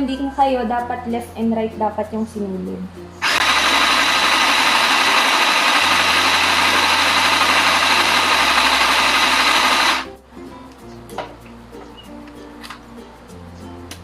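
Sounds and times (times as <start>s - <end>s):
sewing machine motor running: 3.2s - 10.1s.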